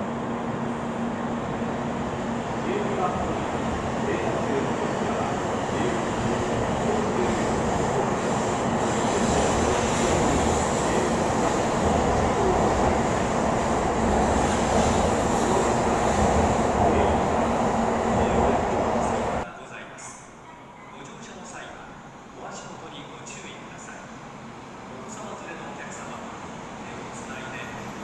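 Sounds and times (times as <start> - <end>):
train rushing rumble: 0.0 - 19.4.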